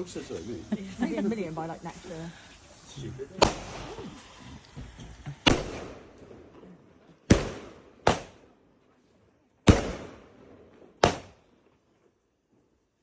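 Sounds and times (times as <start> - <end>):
firework bangs with echo: 3.4 - 4.3, 5.4 - 6.4, 7.3 - 8.5, 9.6 - 11.5.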